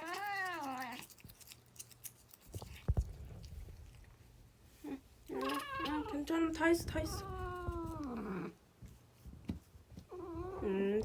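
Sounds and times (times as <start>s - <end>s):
toothbrush clicking and scraping: 0.0s - 3.0s
low thump: 2.6s - 4.4s
cat meowing: 4.8s - 6.3s, 6.9s - 8.5s.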